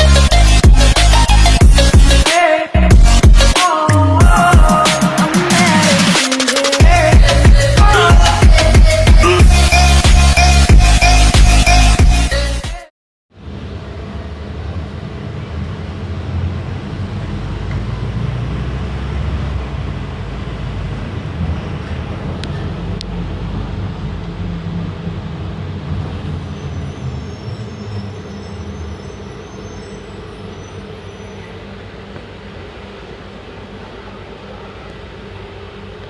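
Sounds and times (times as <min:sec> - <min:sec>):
diesel engine rumbling: 0:06.8 - 0:12.2, 0:13.4 - 0:36.0.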